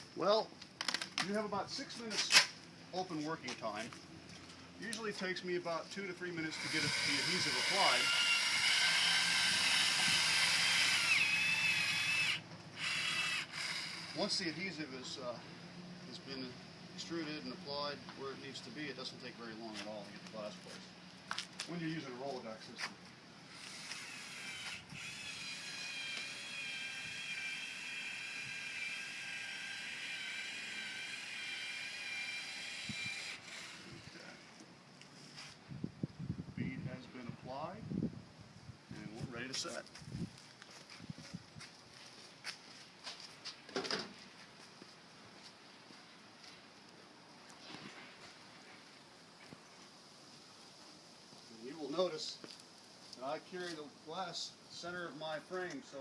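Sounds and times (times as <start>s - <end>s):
caulking gun motor whining: 6.4s - 14.4s, 23.5s - 34.6s.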